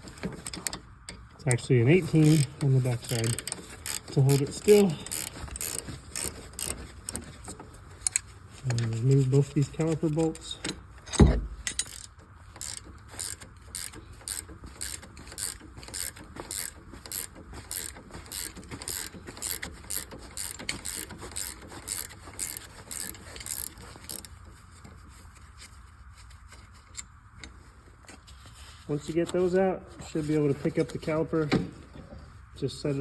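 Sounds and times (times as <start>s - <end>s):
socket ratchet clicking: 2.2s - 7.2s, 11.7s - 24.3s.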